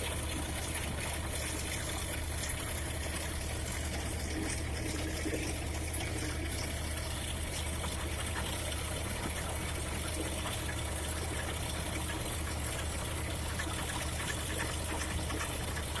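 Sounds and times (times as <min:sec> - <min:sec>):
low engine hum: 0:00.0 - 0:16.0
small crackles and ticks: 0:06.5 - 0:16.0.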